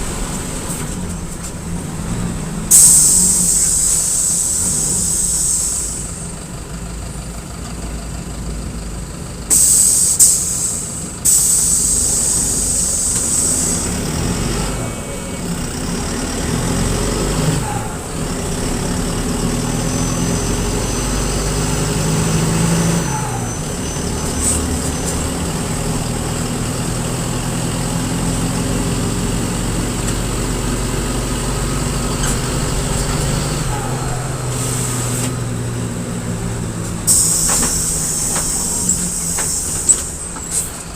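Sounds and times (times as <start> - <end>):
bus diesel engine running: 0.0 - 40.9
air brake hiss: 2.7 - 6.4, 9.5 - 14.1, 23.0 - 25.8, 32.2 - 35.5, 37.0 - 40.8.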